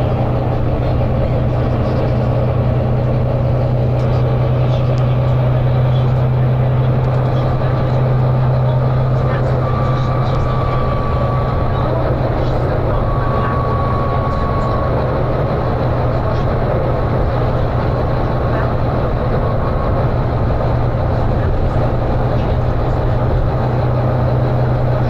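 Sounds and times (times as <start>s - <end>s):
bus diesel engine droning: 0.0s - 25.0s.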